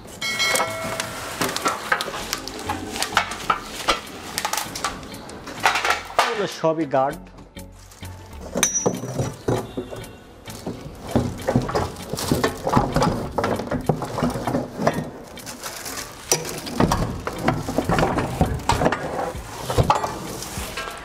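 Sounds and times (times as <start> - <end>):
metal parts clinking and rattling: 0.0 - 6.6, 7.8 - 21.0.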